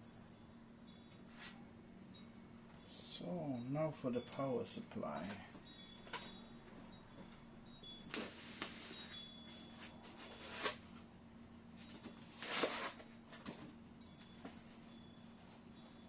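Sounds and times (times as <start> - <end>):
steady low hum: 0.0 - 16.0
handling knocks and rustles: 11.8 - 16.0.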